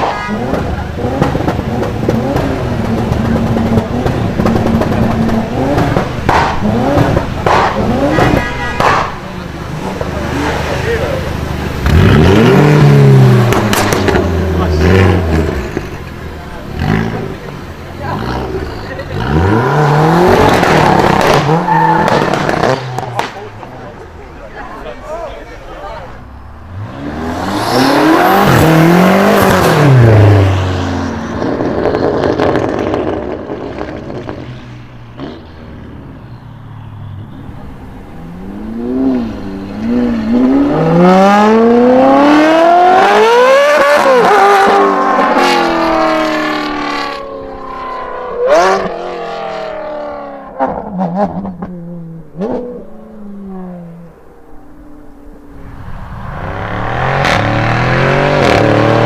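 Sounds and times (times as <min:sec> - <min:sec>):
car engine revving: 0:00.0 - 0:59.0
exhaust pops and cracks: 0:13.5 - 0:14.3, 0:20.6 - 0:23.6.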